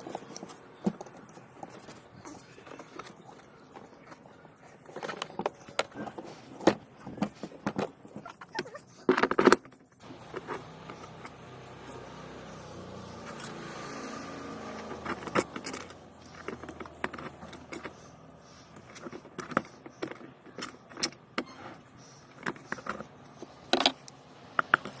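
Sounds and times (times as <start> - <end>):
metal parts clinking and knocking: 14.7 - 18.0, 18.7 - 25.0.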